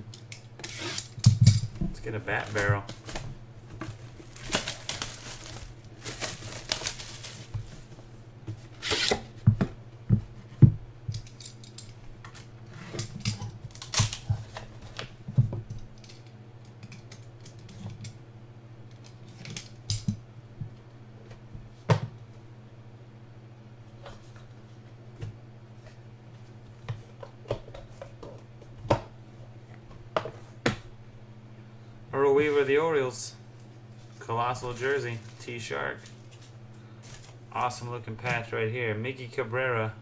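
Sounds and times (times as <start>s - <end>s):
packaging rustling and tearing: 3.9s - 7.9s.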